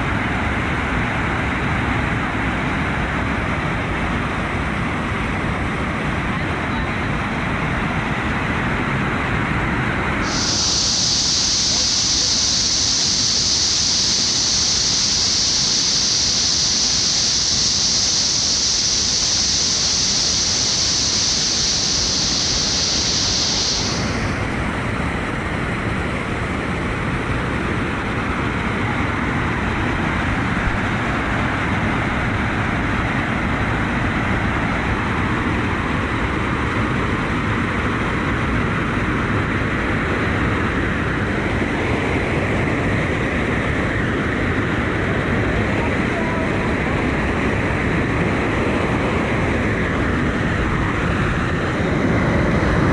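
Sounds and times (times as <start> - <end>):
waterfall rushing: 9.3 - 35.6.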